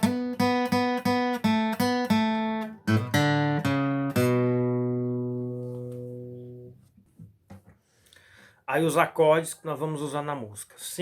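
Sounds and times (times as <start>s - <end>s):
acoustic guitar riff: 0.0s - 6.8s.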